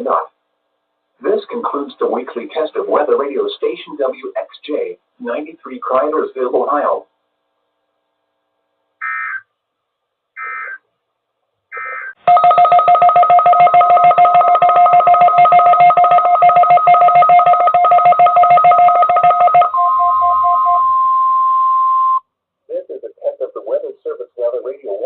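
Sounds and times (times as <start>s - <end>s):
chirping data bursts: 9.0s - 9.5s, 10.4s - 10.9s, 11.7s - 12.2s
pulsing two-tone attention signal: 11.8s - 22.2s
steady alert tone: 11.8s - 22.2s.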